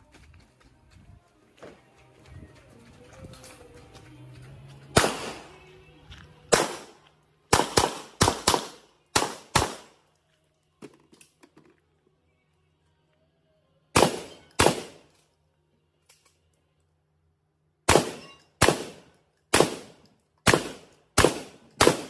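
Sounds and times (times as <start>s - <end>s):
gunshots with ringing tail: 5.0s - 5.5s, 6.5s - 9.9s, 14.0s - 15.0s, 17.9s - 19.9s, 20.5s - 22.0s.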